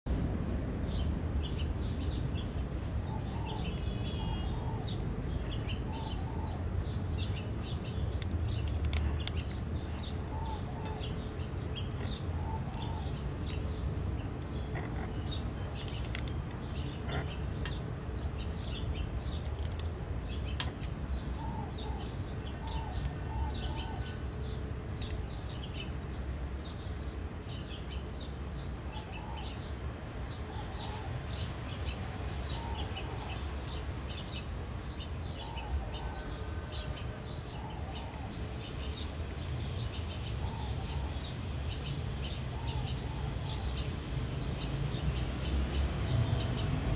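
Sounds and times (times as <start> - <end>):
soft bird chirp: 0.4 - 46.9
parrot crunching carrot: 11.4 - 18.2.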